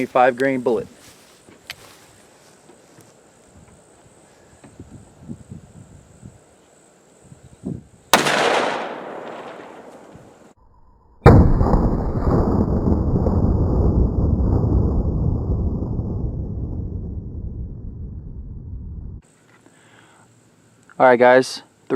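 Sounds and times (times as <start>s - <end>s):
wind noise on microphone: 4.5s - 6.4s, 7.2s - 8.1s, 12.8s - 19.2s
revolver gunshot with echo: 8.2s - 10.4s.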